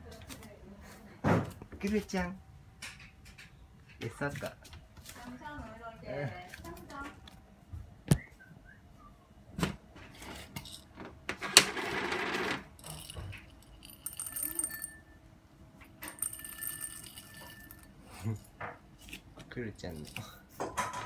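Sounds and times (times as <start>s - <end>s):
metallic jingling and clinking: 12.7s - 15.2s, 16.0s - 18.6s, 19.8s - 20.5s.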